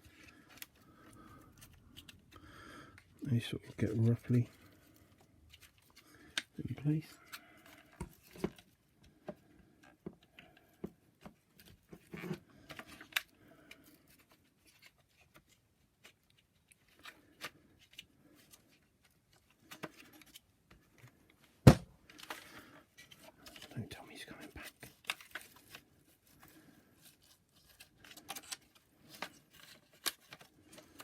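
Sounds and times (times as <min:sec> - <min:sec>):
plastic parts clicking and knocking: 0:07.2 - 0:13.3, 0:27.9 - 0:31.0.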